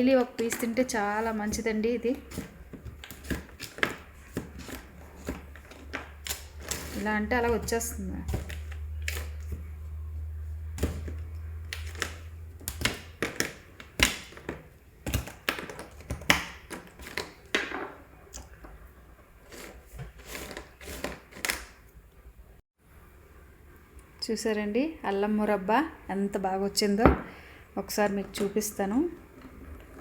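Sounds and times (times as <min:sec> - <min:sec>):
knife scraping candy off a plate: 0:19.5 - 0:21.6.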